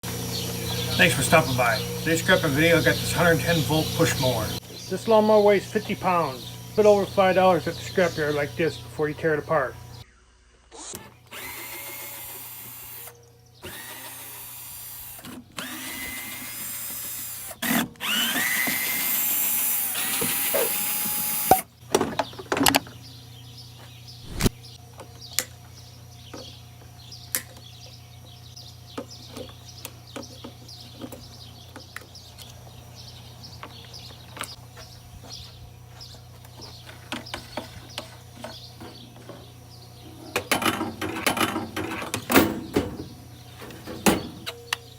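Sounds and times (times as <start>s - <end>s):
power drill running: 11.3s - 21.7s.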